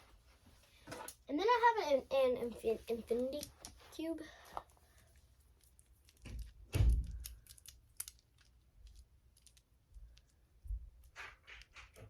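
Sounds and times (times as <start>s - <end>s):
plastic toys clicking: 5.6s - 10.4s.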